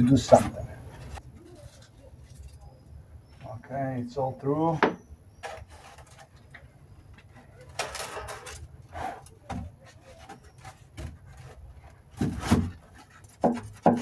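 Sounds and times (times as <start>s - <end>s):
foam rubbing and scraping: 0.0s - 2.6s, 5.3s - 6.5s, 7.3s - 14.0s
knocks: 13.4s - 14.0s.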